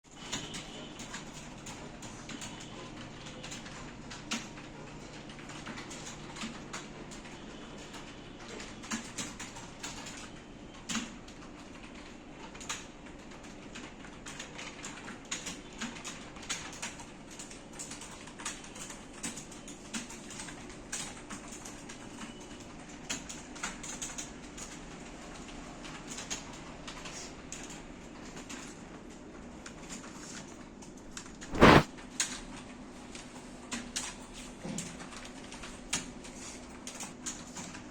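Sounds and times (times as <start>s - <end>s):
loud thump: 31.5s - 31.9s.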